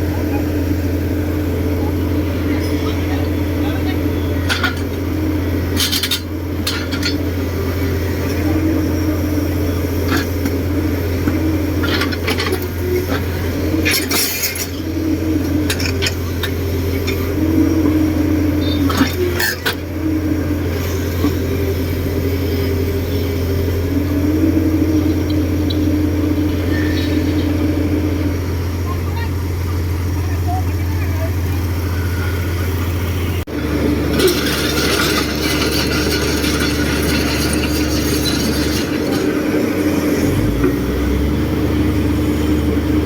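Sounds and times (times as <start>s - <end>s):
diesel construction machine droning: 0.0s - 43.0s.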